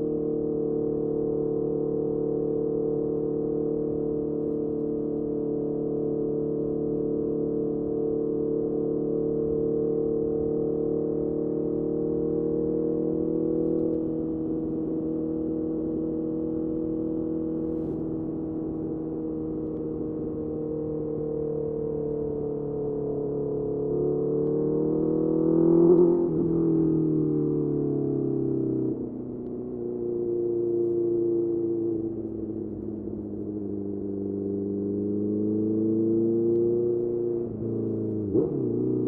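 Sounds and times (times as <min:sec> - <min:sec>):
motorcycle engine running: 0:08.9 - 0:28.2, 0:28.8 - 0:39.0.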